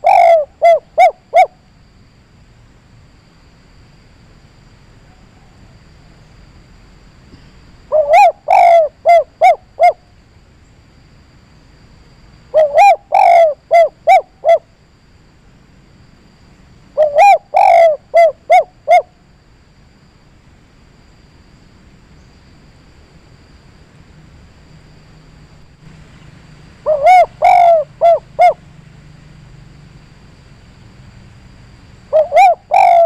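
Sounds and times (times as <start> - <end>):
dove cooing: 0.0 - 1.6, 7.9 - 10.0, 12.5 - 14.7, 17.0 - 19.1, 26.8 - 28.6, 32.1 - 33.0.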